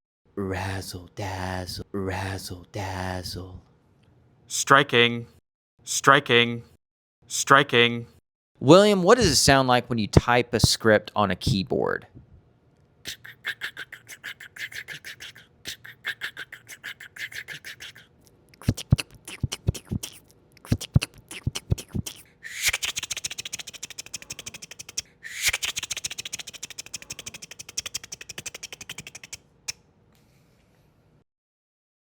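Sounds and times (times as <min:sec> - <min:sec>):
mouth clicks imitating typing: 0:16.0 - 0:29.4.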